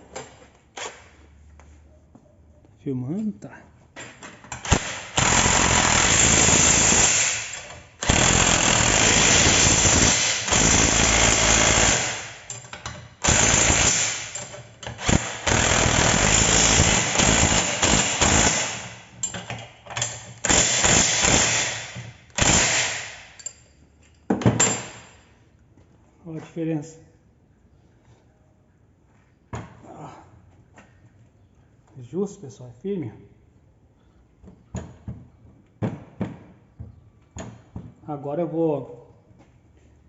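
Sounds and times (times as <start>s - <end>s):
impact wrench bursts: 4.5s - 19.2s, 20.1s - 23.4s.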